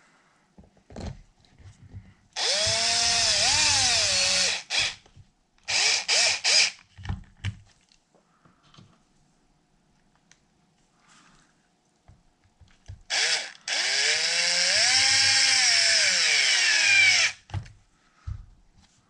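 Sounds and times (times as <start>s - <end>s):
power drill driving screws: 2.4s - 5.0s, 5.7s - 6.8s, 13.1s - 17.4s.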